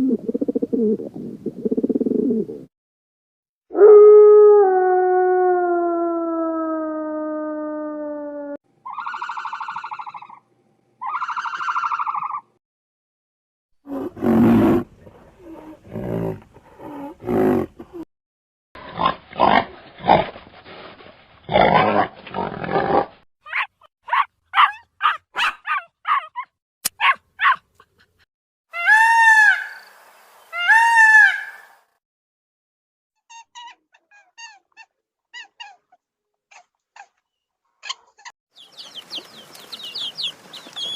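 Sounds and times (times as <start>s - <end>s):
animal howl: 3.7s - 10.3s
rising and falling calls: 38.6s - 40.9s.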